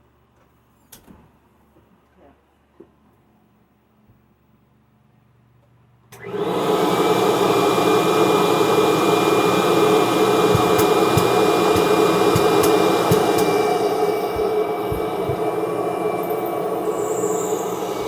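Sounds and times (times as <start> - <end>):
vacuum cleaner motor whining: 6.1 - 18.0.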